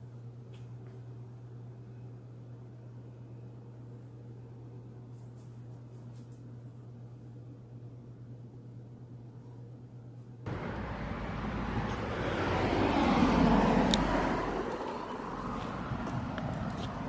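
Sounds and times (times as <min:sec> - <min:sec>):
faint low hum: 0:00.0 - 0:17.0
rumbling outdoor noise: 0:10.5 - 0:17.0.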